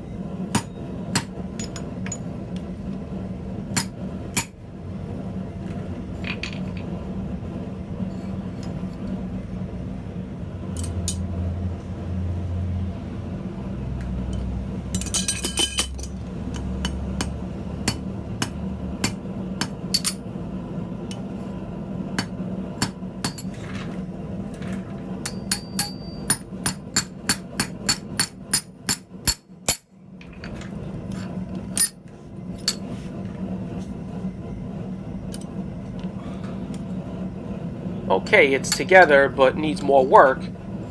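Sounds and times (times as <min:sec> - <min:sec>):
hammer striking steel on anvil: 0:00.5 - 0:02.3, 0:03.7 - 0:04.6, 0:15.0 - 0:20.2, 0:22.2 - 0:23.5, 0:25.2 - 0:30.0.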